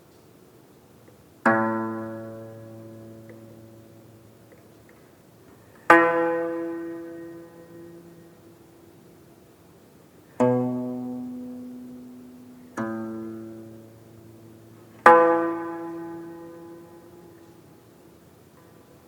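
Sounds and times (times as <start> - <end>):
plucked zither notes ringing: 1.5 - 4.4, 5.9 - 8.9, 10.4 - 17.6.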